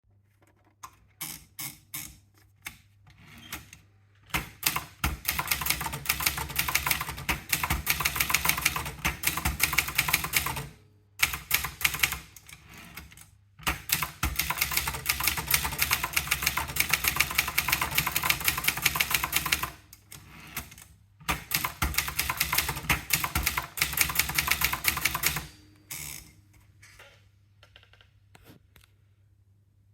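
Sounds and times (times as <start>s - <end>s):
typewriter keystrokes: 4.3s - 19.9s, 20.6s - 25.6s.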